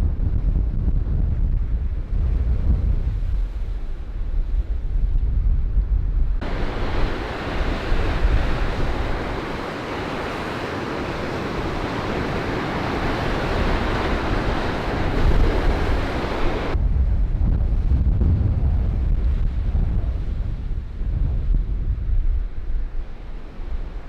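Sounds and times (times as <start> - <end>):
wind buffeting microphone: 0.0 - 24.0
waves breaking on shore: 6.4 - 16.8.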